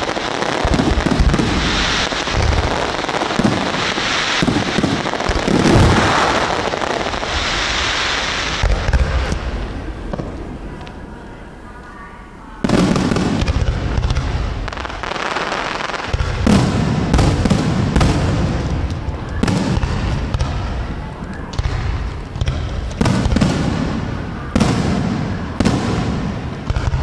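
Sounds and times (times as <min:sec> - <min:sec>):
rumbling echo: 0:15.7 - 0:27.0.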